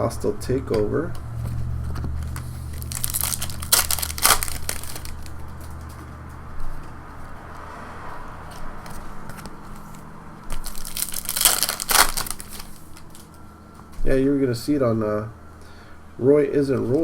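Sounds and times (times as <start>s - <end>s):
wrapper rustling: 1.5s - 5.8s, 8.9s - 13.4s
foil wrapper crinkling: 1.7s - 5.8s, 9.6s - 13.4s.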